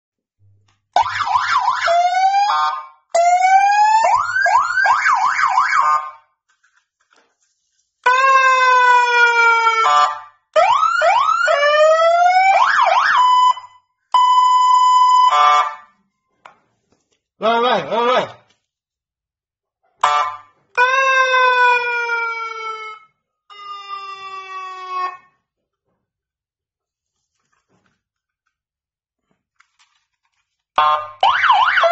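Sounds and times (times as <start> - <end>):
police siren yelping and wailing: 1.0 - 6.2, 8.0 - 15.9, 20.0 - 23.1, 23.8 - 25.3, 30.8 - 31.9
electronic siren horn blasts: 20.0 - 21.7.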